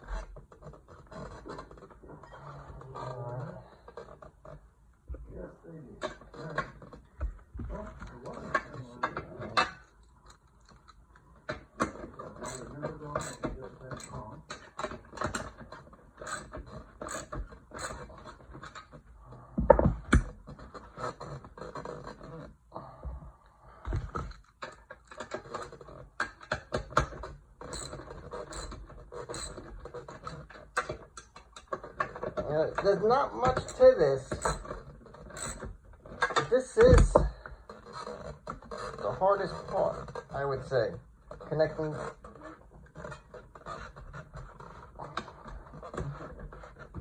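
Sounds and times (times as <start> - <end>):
heavy thumps: 5.0 - 5.4, 7.1 - 8.3, 36.8 - 37.5.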